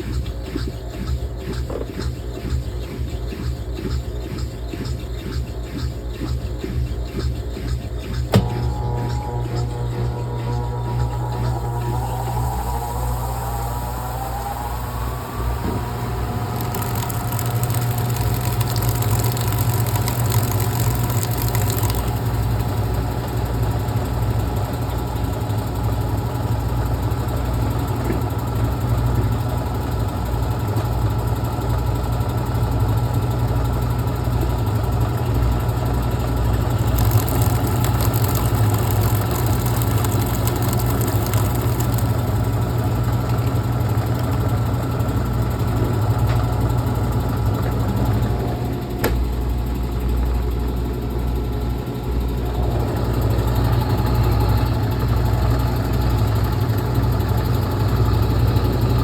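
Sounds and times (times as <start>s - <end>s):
washing machine motor whine: 0.0s - 59.0s
low hum: 8.0s - 23.4s
hiss: 11.5s - 22.1s.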